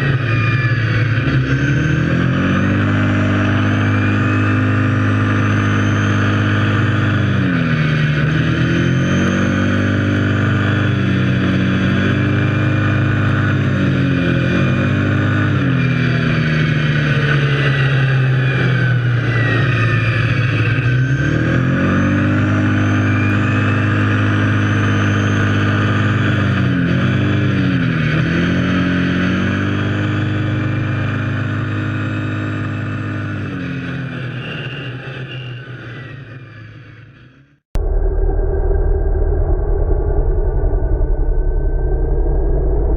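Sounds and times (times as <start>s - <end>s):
quad bike engine running: 0.0s - 35.2s.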